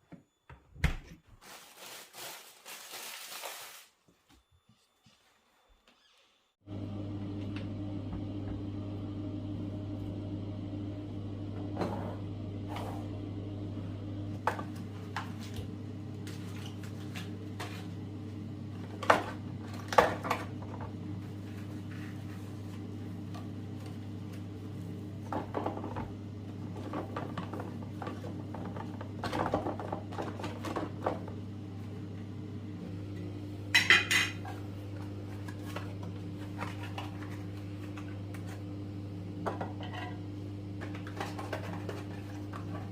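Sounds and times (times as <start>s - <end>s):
dishes and cutlery clinking: 33.8s - 34.5s.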